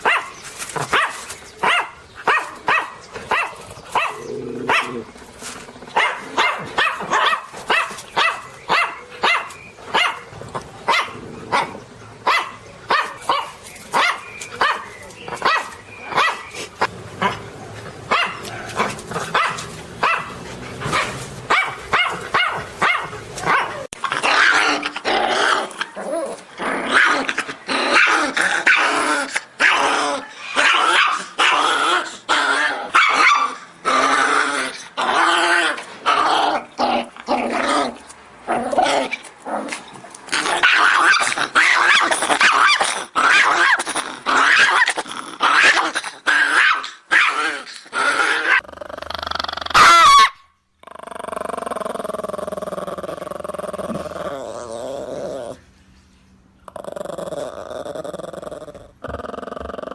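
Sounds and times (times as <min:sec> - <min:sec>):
dog barking: 0:00.0 - 0:05.0, 0:06.0 - 0:10.3, 0:10.9 - 0:16.5, 0:17.2 - 0:17.5, 0:18.1 - 0:23.9, 0:49.8 - 0:50.4
dog growling and snarling: 0:03.2 - 0:07.8, 0:10.3 - 0:12.0, 0:16.1 - 0:33.0, 0:33.8 - 0:50.0, 0:50.8 - 0:55.6, 0:56.6 - 0:59.9.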